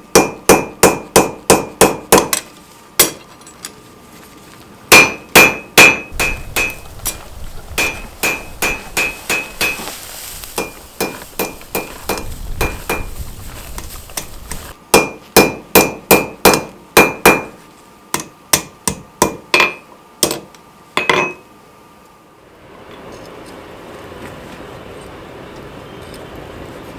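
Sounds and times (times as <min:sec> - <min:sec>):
hammer striking steel on anvil: 0:00.1 - 0:02.4, 0:03.0 - 0:03.2, 0:04.9 - 0:07.2, 0:07.8 - 0:09.9, 0:10.6 - 0:13.1, 0:14.9 - 0:21.5.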